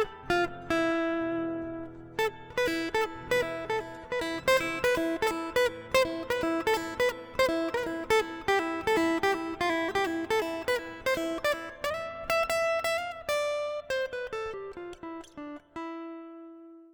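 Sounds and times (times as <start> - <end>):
acoustic guitar playing: 0.0 - 16.9.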